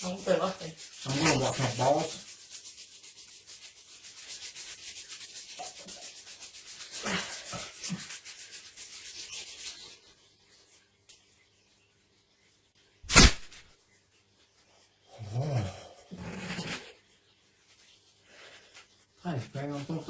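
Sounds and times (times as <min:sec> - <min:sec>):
hand rubbing wax strip: 0:00.0 - 0:10.0, 0:13.1 - 0:13.6.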